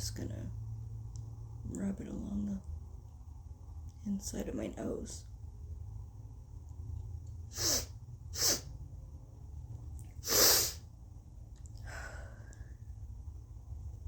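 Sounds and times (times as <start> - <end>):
sharp bursts of air through nose: 7.5 - 8.8, 10.2 - 10.9.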